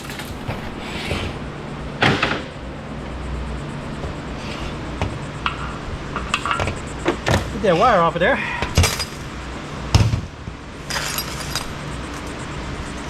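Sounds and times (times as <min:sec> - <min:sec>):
metal parts clattering: 0:00.0 - 0:00.6, 0:08.8 - 0:09.4, 0:10.8 - 0:12.4.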